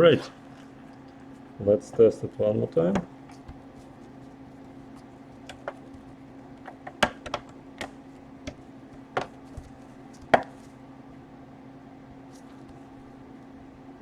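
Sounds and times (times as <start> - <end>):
plastic clicks and taps: 6.6 - 8.6.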